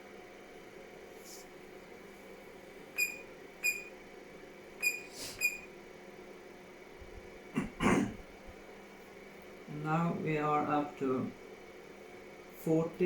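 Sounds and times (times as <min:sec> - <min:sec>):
low electrical hum: 0:00.0 - 0:13.0
short high electronic beeps: 0:03.0 - 0:03.9, 0:04.8 - 0:05.7.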